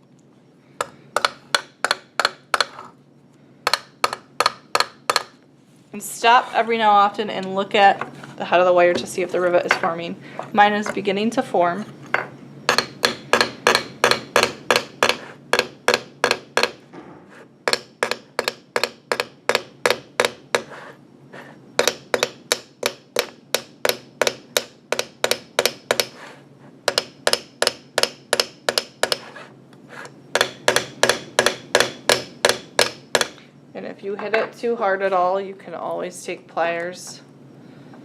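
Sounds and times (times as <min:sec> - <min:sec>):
hammer tapping on metal wire: 0:00.8 - 0:02.9, 0:03.7 - 0:05.4, 0:12.7 - 0:16.8, 0:17.7 - 0:20.7, 0:21.8 - 0:26.1, 0:26.9 - 0:29.2, 0:30.4 - 0:33.4.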